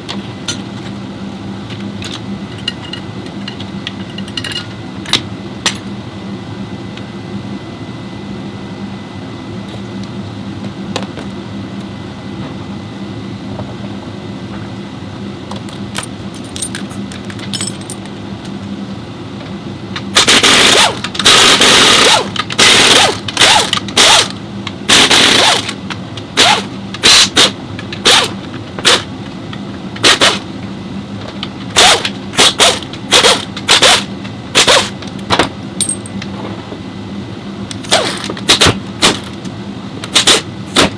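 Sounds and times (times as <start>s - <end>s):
steady machine hum: 0.0s - 40.9s
pneumatic air tool bursts: 20.2s - 24.3s, 24.9s - 25.7s, 26.4s - 28.3s, 30.0s - 30.4s, 31.8s - 34.9s, 40.1s - 40.9s.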